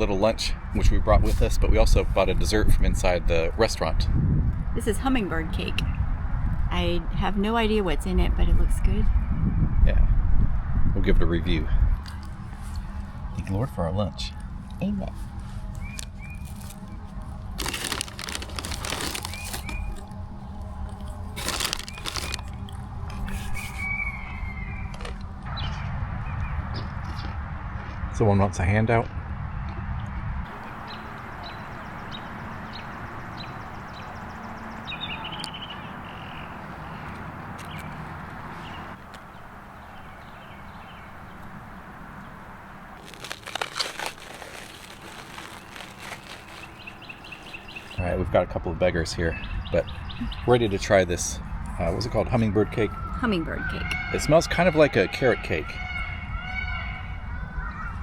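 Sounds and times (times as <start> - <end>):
plastic packaging crinkling: 15.8 - 20.2, 20.9 - 22.8, 43.0 - 48.0.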